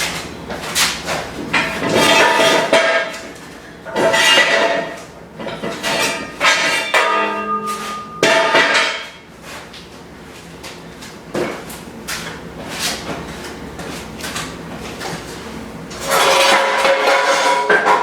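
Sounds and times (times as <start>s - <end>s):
steel parts clanking and ringing: 5.5s - 9.0s.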